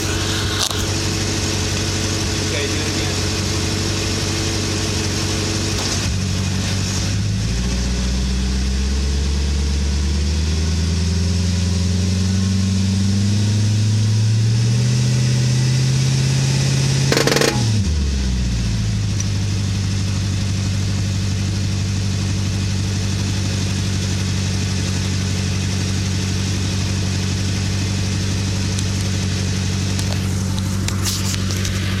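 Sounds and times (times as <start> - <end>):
car engine idling: 0.0 - 14.4, 15.7 - 32.0
car engine revving: 0.0 - 32.0
sharp loud drivetrain pop: 17.1 - 17.8.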